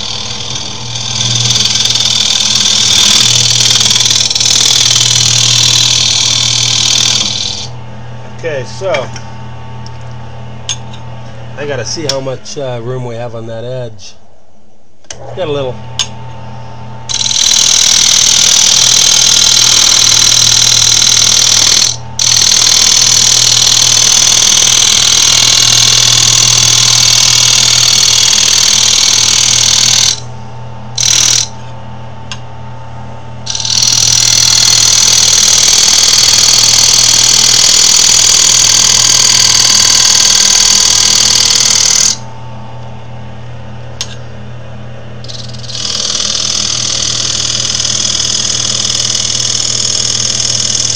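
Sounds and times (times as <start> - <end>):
lathe tool scraping wood: 0.0 - 7.7
wood lathe humming: 0.0 - 7.8, 17.1 - 30.3, 31.0 - 31.5, 33.5 - 42.2, 45.3 - 50.9.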